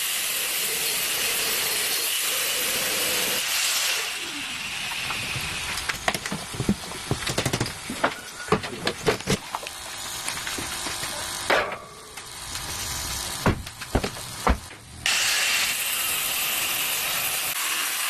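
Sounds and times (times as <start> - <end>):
sharp clicks and knocks: 5.0 - 14.9
steady hiss: 9.9 - 17.6.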